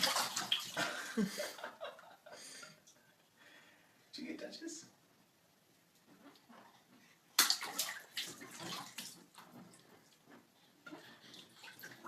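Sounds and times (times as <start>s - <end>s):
water splashing: 0.0s - 1.2s, 7.4s - 9.8s, 11.2s - 12.0s.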